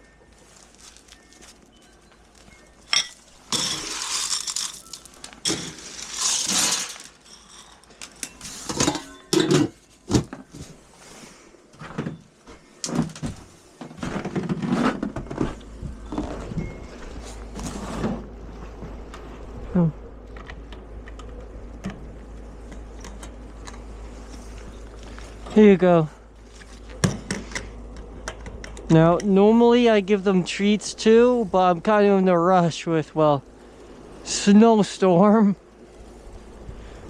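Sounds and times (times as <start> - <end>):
rustling and scraping: 0.0 - 19.6, 21.9 - 25.6, 26.4 - 28.7
knocks and clinks of objects: 0.8 - 10.3.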